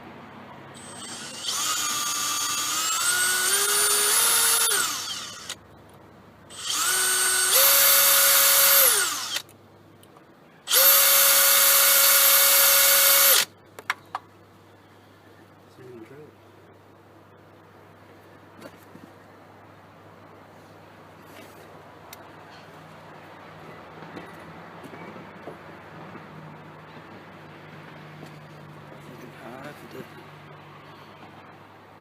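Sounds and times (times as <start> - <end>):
cordless drill whining: 0.8 - 5.6, 6.5 - 9.4, 10.7 - 13.5.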